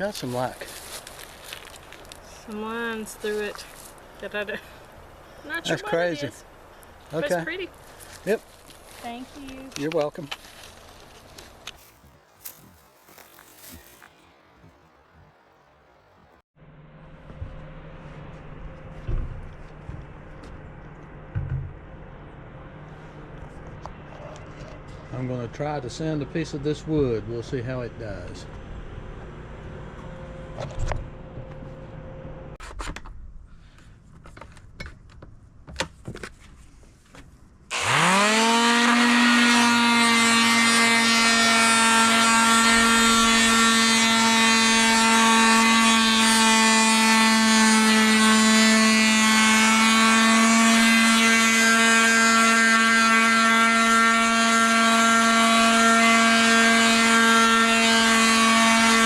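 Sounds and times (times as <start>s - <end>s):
electric sander whining: 37.7s - 59.0s.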